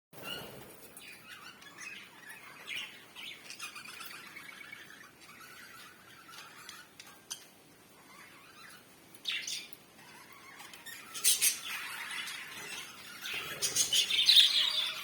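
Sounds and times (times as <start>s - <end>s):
birds twittering: 0.2s - 15.0s
bird squawking: 8.0s - 15.0s
loud sharp bird calls: 8.0s - 15.0s.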